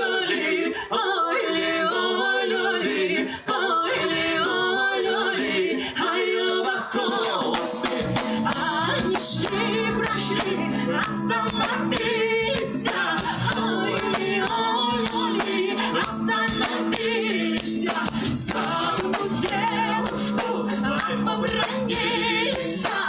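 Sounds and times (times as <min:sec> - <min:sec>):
people singing: 0:00.0 - 0:23.0
percussive beat: 0:06.6 - 0:23.0
folk band playing: 0:07.4 - 0:23.0.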